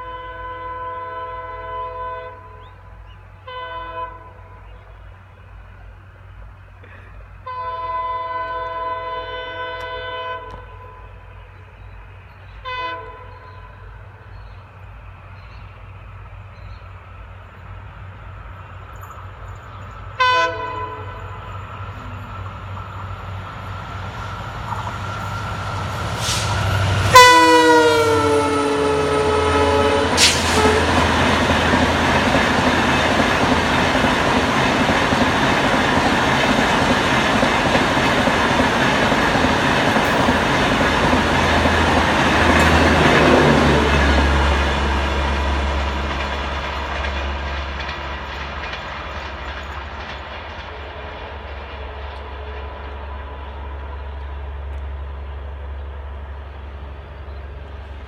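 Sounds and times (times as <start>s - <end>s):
locomotive horn blasts: 0.0s - 2.7s, 3.4s - 4.7s, 7.4s - 11.2s, 12.6s - 14.0s, 20.2s - 22.2s, 26.2s - 32.1s
train wheels on rails: 4.5s - 58.0s
coaches clickety-clack: 31.3s - 43.2s, 46.1s - 53.0s.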